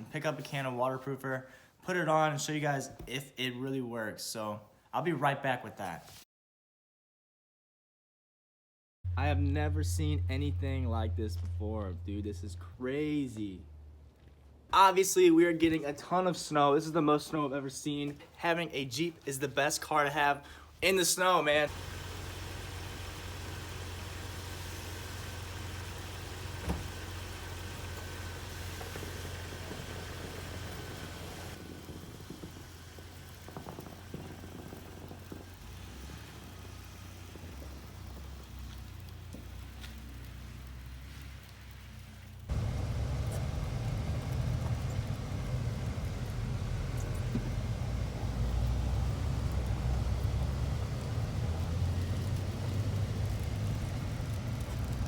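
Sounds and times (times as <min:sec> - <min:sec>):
engine humming: 0:09.1 - 0:14.5, 0:21.7 - 0:55.0
road rumble: 0:09.1 - 0:15.0, 0:21.6 - 0:55.0.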